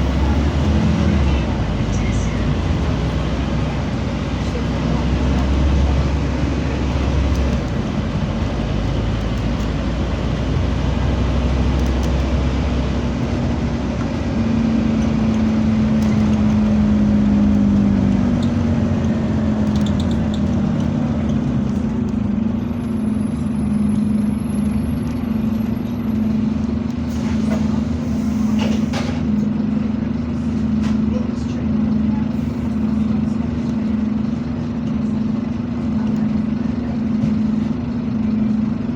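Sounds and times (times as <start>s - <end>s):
bus diesel engine running: 0.0s - 38.9s.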